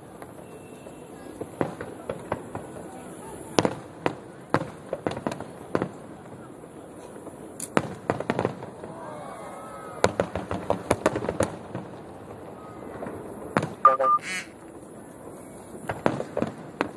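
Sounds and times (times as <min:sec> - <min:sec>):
fireworks bangs and crackles: 0:00.0 - 0:16.9
crowd voices: 0:12.3 - 0:14.6.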